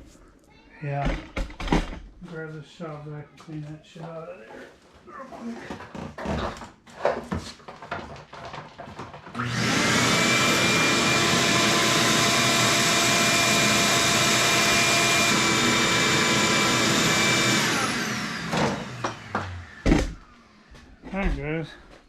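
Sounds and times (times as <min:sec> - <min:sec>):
shop vac running: 0:09.2 - 0:21.6.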